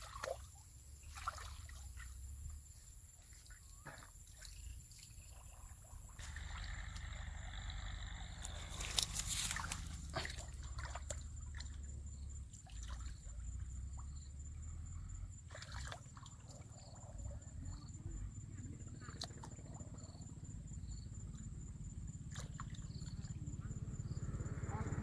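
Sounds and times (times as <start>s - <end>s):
water sloshing and splashing: 0.0s - 7.2s, 8.4s - 14.0s, 15.5s - 17.1s, 22.3s - 23.3s.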